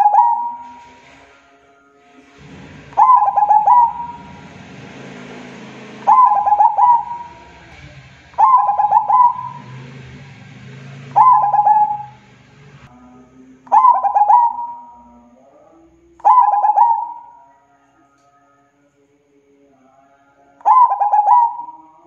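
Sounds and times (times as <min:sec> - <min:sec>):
dove cooing: 0:00.0 - 0:01.0, 0:03.0 - 0:04.4, 0:06.1 - 0:07.6, 0:08.4 - 0:09.9, 0:11.0 - 0:12.2, 0:13.7 - 0:15.0, 0:16.2 - 0:17.4, 0:20.6 - 0:21.9
faint low drone: 0:00.0 - 0:16.2.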